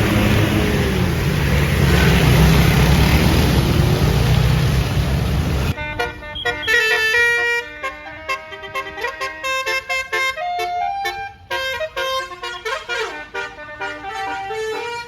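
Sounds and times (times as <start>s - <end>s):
bus engine running: 0.0s - 5.8s
multi-tone air horn melody: 5.6s - 15.0s.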